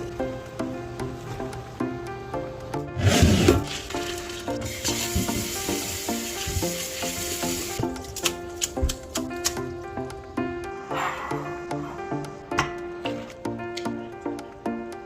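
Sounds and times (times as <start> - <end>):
light background music: 0.0 - 15.0.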